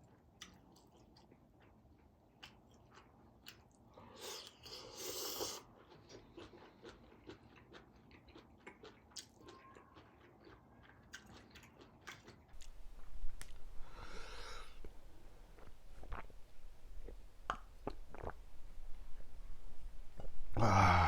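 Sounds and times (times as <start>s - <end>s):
wet chewing with mouth clicks: 0.0s - 20.6s
noodle slurp: 4.2s - 5.7s, 12.6s - 19.5s.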